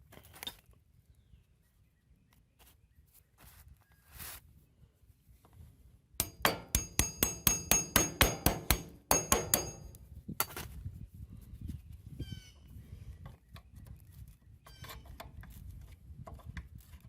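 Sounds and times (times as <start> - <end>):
hammer striking metal: 6.2 - 10.0.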